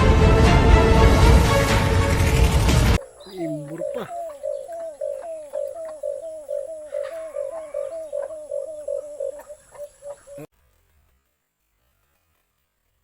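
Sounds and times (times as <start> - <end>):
dove cooing: 3.0 - 10.5.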